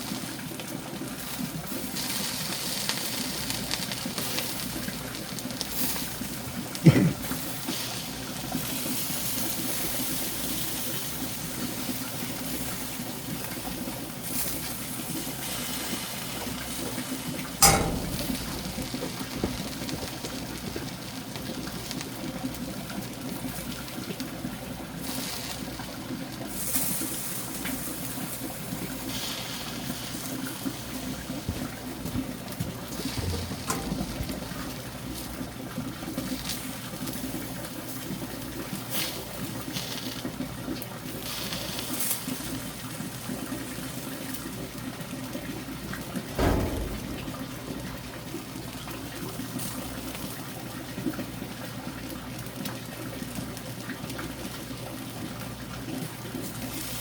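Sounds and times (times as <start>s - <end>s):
sharp knock: 17.6s - 19.5s, 33.2s - 35.3s, 46.4s - 48.0s.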